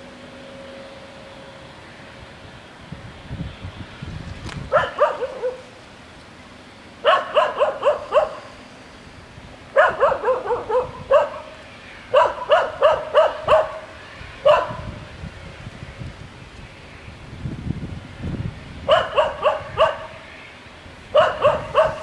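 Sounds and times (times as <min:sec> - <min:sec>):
dog barking: 0:04.7 - 0:05.7, 0:07.0 - 0:08.5, 0:09.8 - 0:14.9, 0:18.9 - 0:20.2, 0:21.1 - 0:22.0.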